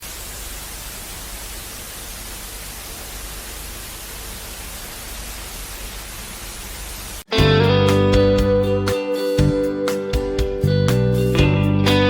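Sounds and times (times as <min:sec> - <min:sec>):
steady static hiss: 0:00.0 - 0:07.3.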